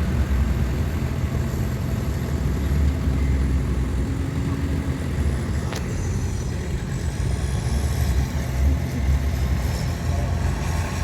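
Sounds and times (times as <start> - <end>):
heavy machinery diesel engines rumbling: 0.0 - 11.0.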